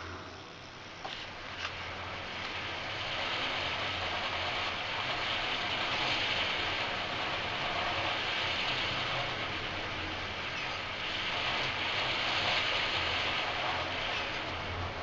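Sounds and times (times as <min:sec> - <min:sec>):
low hum: 0:00.0 - 0:11.9
wind generator whirring: 0:00.0 - 0:15.0.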